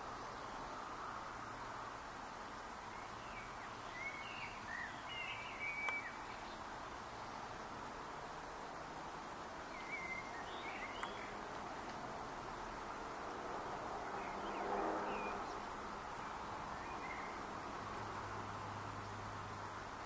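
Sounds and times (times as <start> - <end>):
steady background hiss: 0.0 - 20.0
faint high chirping calls: 2.8 - 7.8, 9.6 - 11.5, 14.0 - 17.5.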